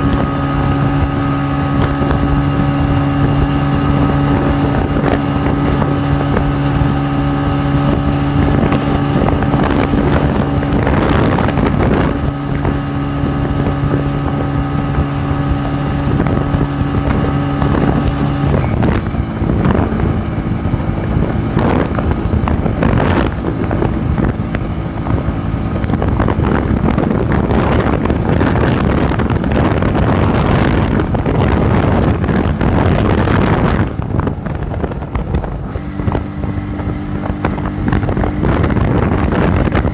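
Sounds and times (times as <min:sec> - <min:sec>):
motorcycle engine running: 0:00.0 - 0:39.9
wind buffeting microphone: 0:00.0 - 0:39.9.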